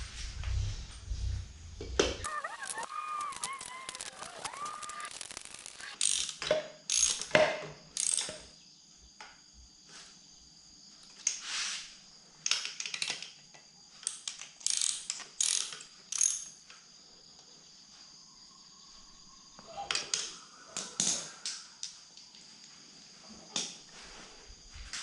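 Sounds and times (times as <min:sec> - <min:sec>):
ratchet wrench clicking: 0:02.2 - 0:07.3, 0:08.0 - 0:08.4, 0:14.0 - 0:16.5.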